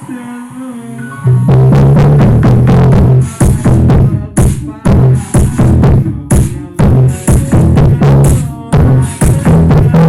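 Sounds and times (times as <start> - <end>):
loud funk music on car stereo: 0.0 - 10.0.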